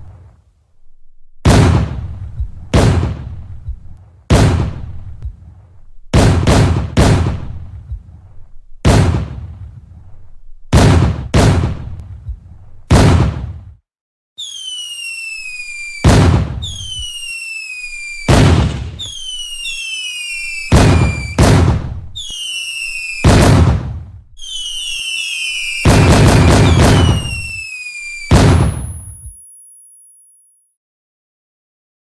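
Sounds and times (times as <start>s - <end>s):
firework bangs: 1.4s - 7.9s, 8.8s - 10.1s, 10.7s - 12.2s, 12.9s - 13.8s, 14.4s - 29.5s
whistling firework rockets: 14.4s - 30.6s.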